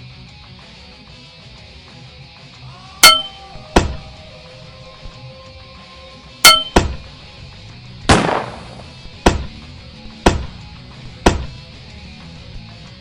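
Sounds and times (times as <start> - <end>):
dull thud: 3.0 - 4.1, 6.5 - 7.2, 8.0 - 12.7
metallic clangs with ringing tone: 3.0 - 4.2, 6.5 - 7.2.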